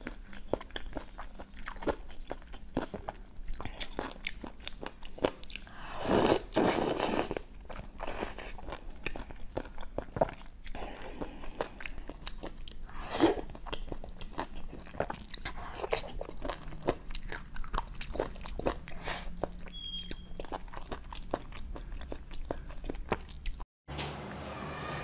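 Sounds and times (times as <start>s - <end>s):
biting and crunching food: 0.0s - 23.6s.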